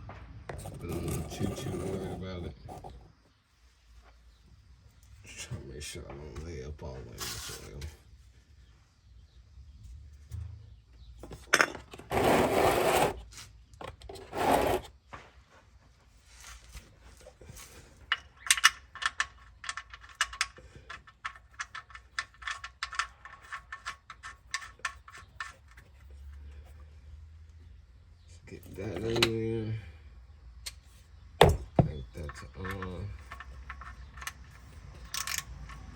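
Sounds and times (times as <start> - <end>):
scraping and shuffling: 0.5 - 4.4, 5.0 - 8.2, 11.2 - 18.2.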